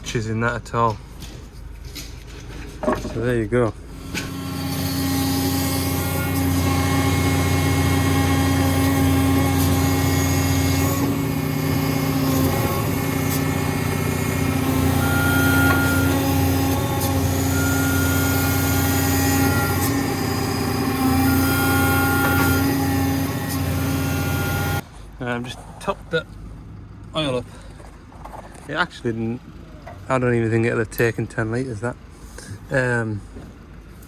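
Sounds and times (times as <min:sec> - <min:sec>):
excavator engine idling: 0:06.9 - 0:32.1.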